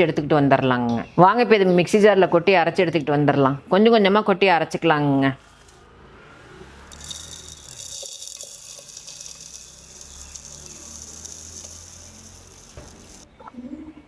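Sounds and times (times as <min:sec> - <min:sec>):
seeds poured into grinder jar: 0:06.4 - 0:13.2.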